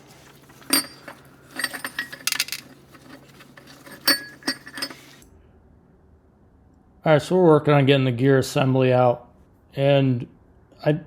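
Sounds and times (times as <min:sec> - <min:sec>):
steel parts clinking: 0:00.0 - 0:05.2.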